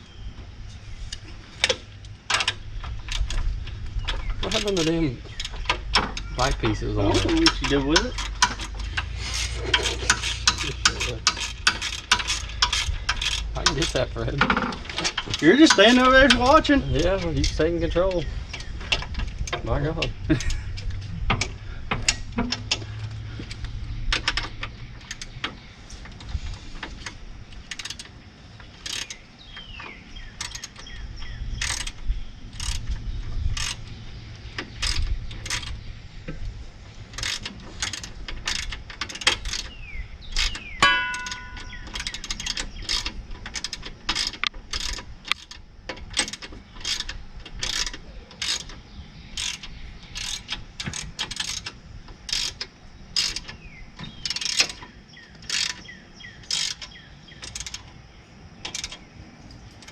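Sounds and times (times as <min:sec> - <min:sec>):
socket ratchet clicking: 0:01.1 - 0:17.7, 0:20.3 - 0:36.5, 0:37.1 - 0:58.0, 0:58.6 - 0:59.9
metallic ring: 0:40.8 - 0:41.8.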